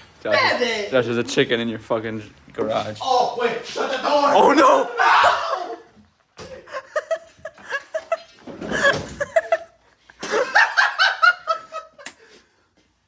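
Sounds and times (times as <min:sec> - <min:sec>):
people laughing: 0:05.1 - 0:12.3.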